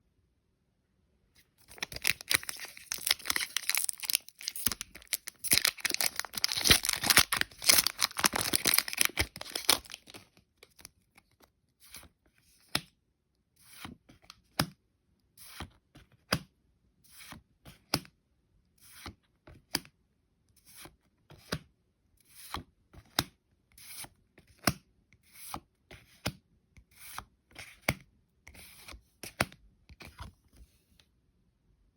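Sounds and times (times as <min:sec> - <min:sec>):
foil wrapper tearing and crinkling: 0:01.6 - 0:10.8.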